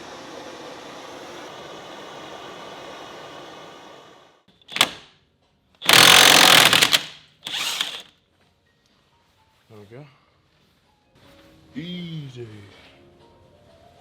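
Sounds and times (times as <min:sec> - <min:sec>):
impact wrench hammering: 0:04.7 - 0:05.1, 0:05.8 - 0:08.1.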